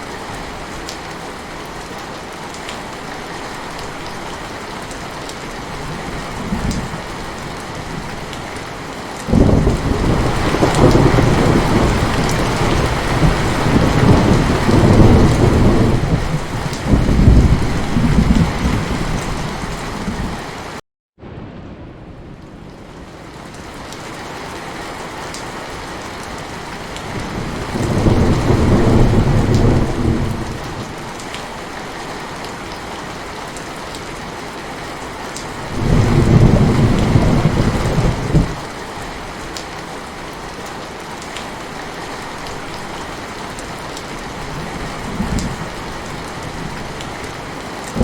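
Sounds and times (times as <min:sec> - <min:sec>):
rolling thunder: 0:09.3 - 0:20.4, 0:27.1 - 0:31.0, 0:35.7 - 0:38.6
heavy rain hissing: 0:34.3 - 0:48.0.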